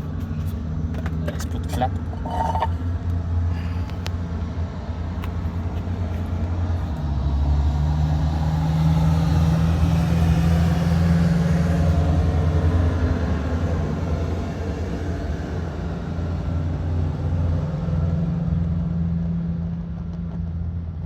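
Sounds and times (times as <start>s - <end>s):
oil burner rumbling and humming: 0.0s - 7.3s.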